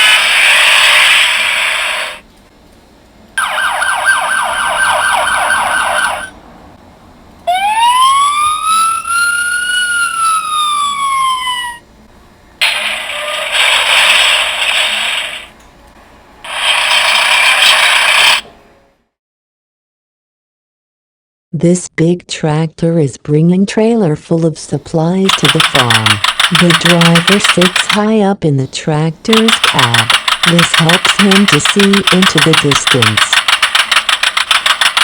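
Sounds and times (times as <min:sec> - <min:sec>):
siren rising and falling: 0:03.4 - 0:06.4, 0:07.4 - 0:11.9.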